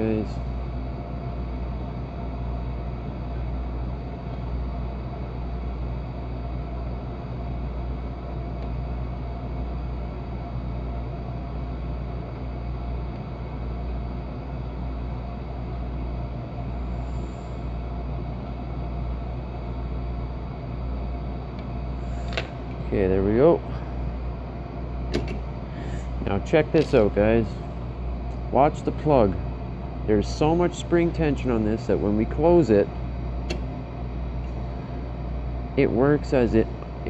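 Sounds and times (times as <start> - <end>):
furnace low rumble: 0.0 - 37.0
blower hiss: 16.6 - 18.2, 21.8 - 24.3, 25.1 - 33.7.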